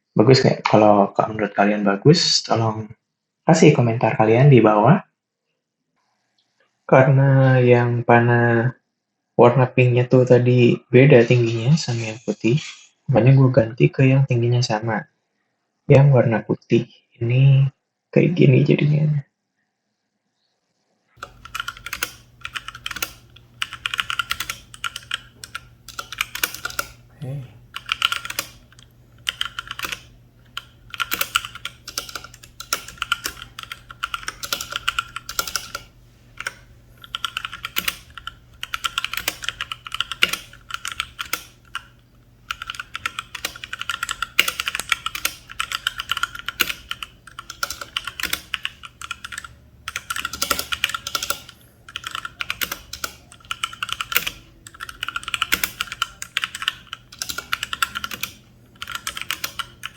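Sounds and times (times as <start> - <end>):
typing on mechanical keyboard: 21.2 - 27.1, 27.7 - 59.9.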